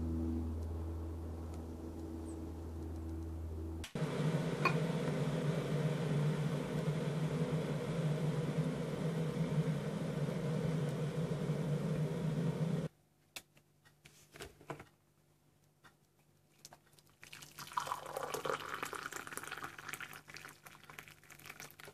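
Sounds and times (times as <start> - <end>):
kitchen appliance humming: 4.0 - 12.9.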